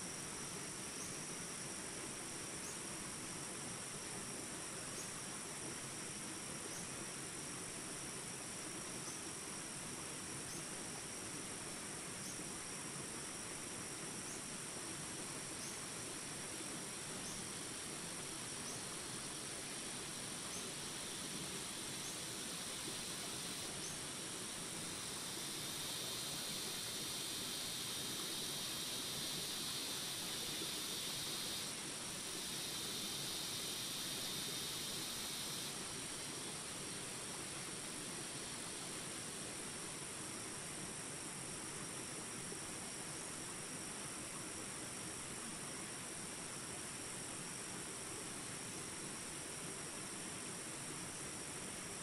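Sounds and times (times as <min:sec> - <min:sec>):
high-pitched insect drone: 0:14.3 - 0:39.3.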